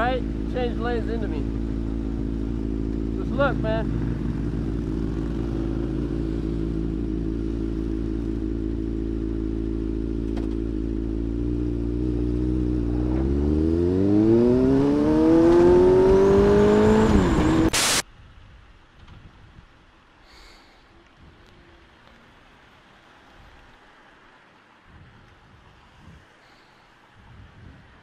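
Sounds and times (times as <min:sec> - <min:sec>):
motorcycle engine accelerating: 0:00.0 - 0:18.0
loud burst of noise: 0:17.6 - 0:18.0.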